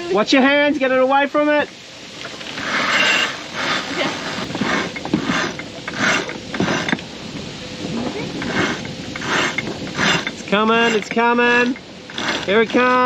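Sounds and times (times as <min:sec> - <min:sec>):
ratcheting winch clicks: 0:02.2 - 0:07.0, 0:08.4 - 0:13.0
rope swishing and scraping: 0:02.4 - 0:06.9.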